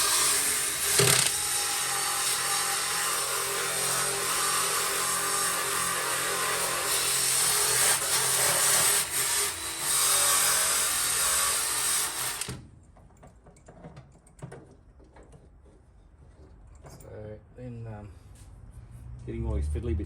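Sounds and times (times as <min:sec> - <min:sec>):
power sander on sheet metal: 0:00.0 - 0:12.5.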